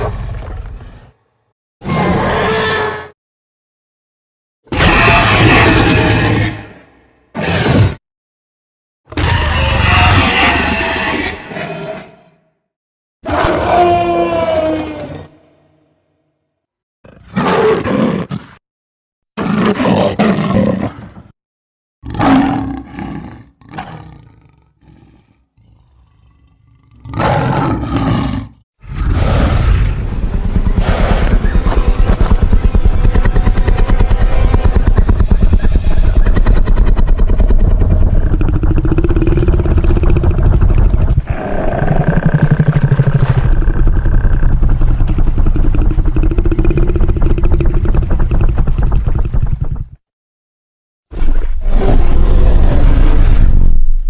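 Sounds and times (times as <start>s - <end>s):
dinosaur roars and growls: 0.0s - 3.2s, 4.7s - 8.0s, 9.1s - 12.4s, 13.2s - 15.8s, 22.0s - 49.9s, 51.6s - 54.0s
deep rumble: 28.9s - 41.4s, 42.2s - 50.0s.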